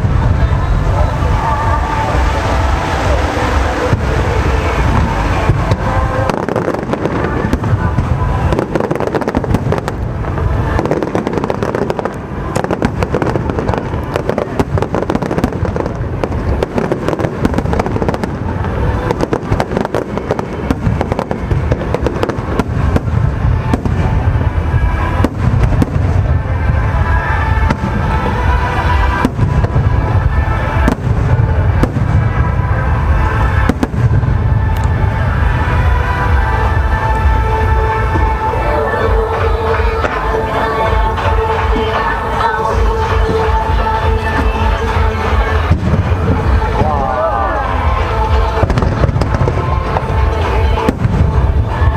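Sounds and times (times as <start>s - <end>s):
fireworks bursting: 0.0s - 51.9s
music playing: 0.0s - 51.9s.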